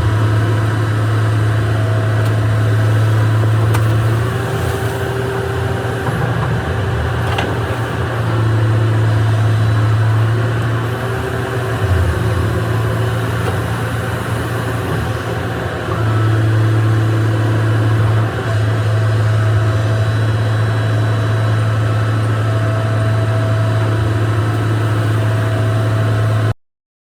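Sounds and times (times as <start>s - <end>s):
diesel engine humming: 0.0s - 26.5s.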